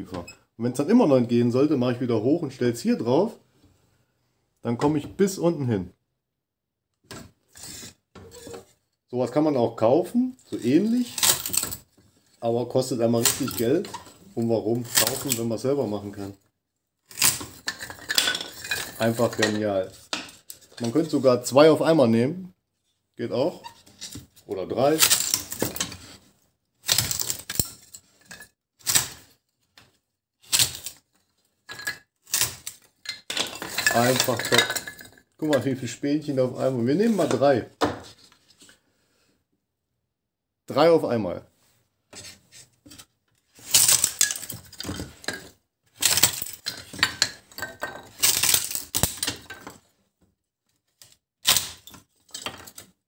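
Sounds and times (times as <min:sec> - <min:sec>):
wood splitting cracks: 0:11.0 - 0:11.8, 0:13.2 - 0:13.8, 0:14.8 - 0:15.4, 0:17.1 - 0:19.5, 0:25.0 - 0:26.0, 0:26.8 - 0:27.8, 0:28.8 - 0:29.4, 0:30.5 - 0:31.0, 0:32.2 - 0:34.5, 0:43.6 - 0:45.1, 0:46.0 - 0:49.6, 0:51.0 - 0:52.8
kindling sticks clattering: 0:13.2 - 0:14.2, 0:17.1 - 0:21.0, 0:24.9 - 0:26.0, 0:31.7 - 0:35.2, 0:43.6 - 0:49.7.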